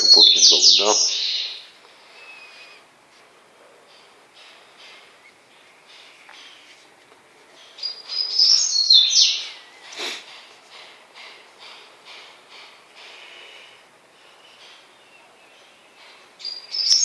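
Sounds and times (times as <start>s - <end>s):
birds chirping: 0.0s - 2.9s, 3.9s - 17.0s.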